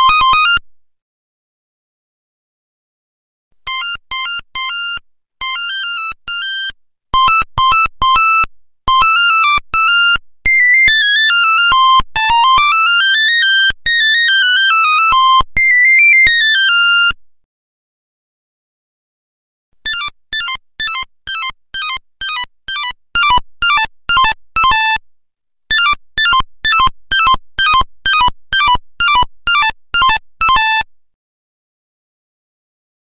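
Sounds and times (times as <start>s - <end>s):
buzzy electronic ringtone beeps: 19.9s - 25.0s, 25.7s - 30.9s.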